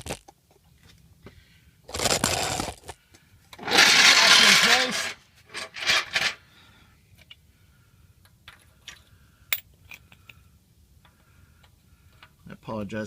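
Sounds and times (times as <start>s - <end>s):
jack handle scraping: 3.6s - 6.4s.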